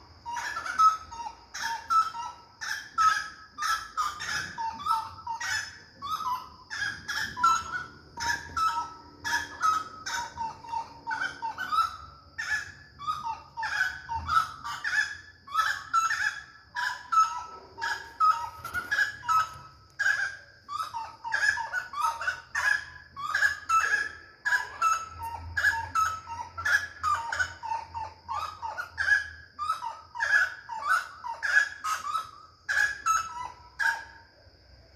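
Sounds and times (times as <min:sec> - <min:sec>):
large birds calling: 0:00.0 - 0:34.4.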